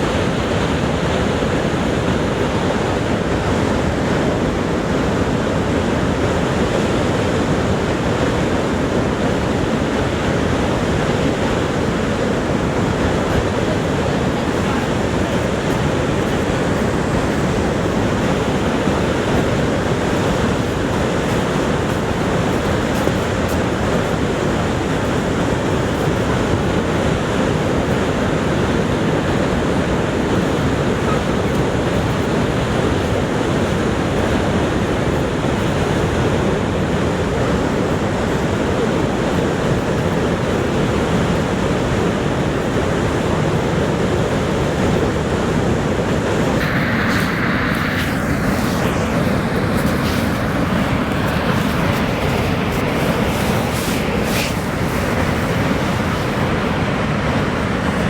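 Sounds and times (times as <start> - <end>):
waterfall rushing: 46.6 - 58.0.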